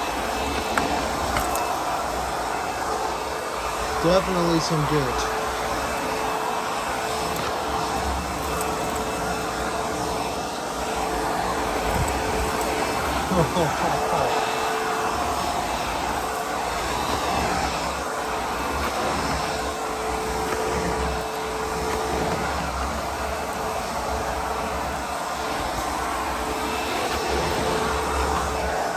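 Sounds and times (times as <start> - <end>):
vacuum cleaner running: 0.0 - 28.9.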